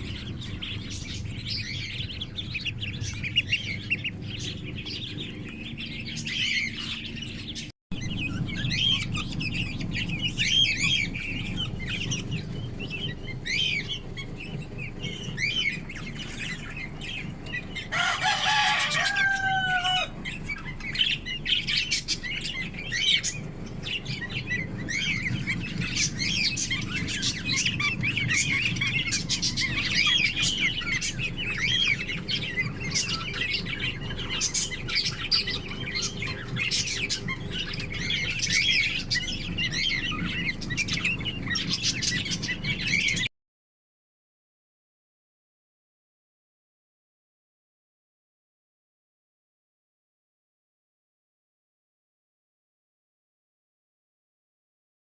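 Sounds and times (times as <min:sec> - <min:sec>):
parrots chirping: 0:00.0 - 0:43.3.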